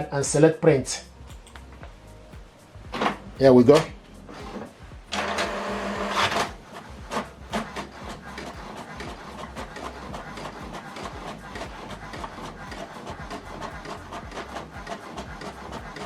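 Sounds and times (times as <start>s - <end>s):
inkjet printer printing: 4.4s - 16.0s.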